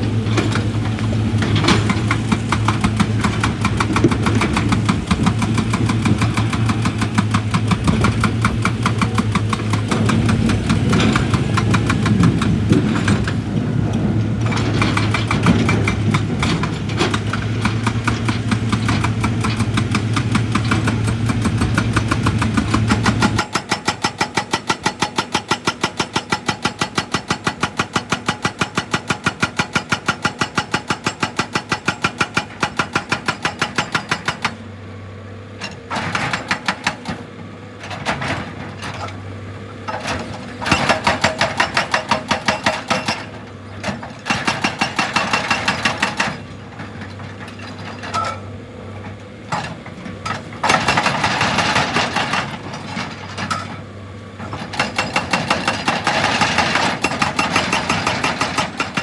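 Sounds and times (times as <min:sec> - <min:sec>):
rock-breaking machine hammering: 0:00.4 - 0:13.4, 0:40.1 - 0:43.4, 0:44.0 - 0:46.4, 0:50.3 - 0:52.9, 0:54.4 - 0:59.0.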